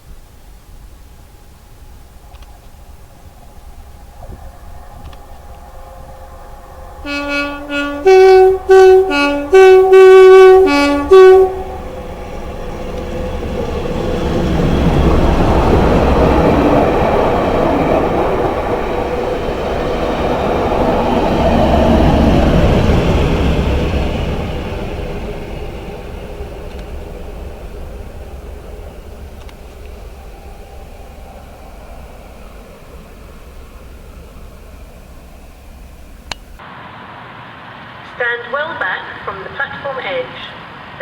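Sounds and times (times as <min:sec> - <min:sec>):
train passing at speed: 0:00.0 - 0:41.0
train horn short blasts: 0:07.0 - 0:11.8.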